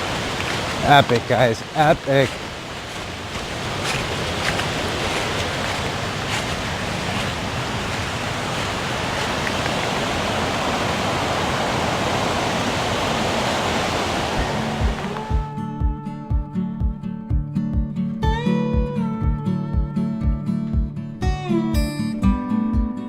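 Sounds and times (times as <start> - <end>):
creek water rushing: 0.0 - 15.6.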